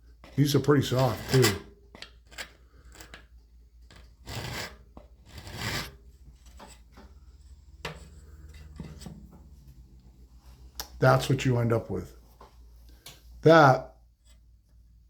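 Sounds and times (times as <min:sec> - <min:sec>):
hand file on saw tooth: 0:04.2 - 0:06.0.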